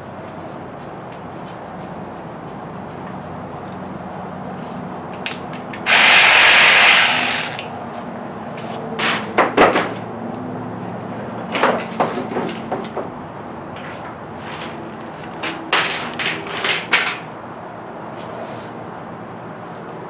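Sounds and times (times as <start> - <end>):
power tool running: 5.8 - 7.8
metal clicks and knocks: 11.5 - 13.1.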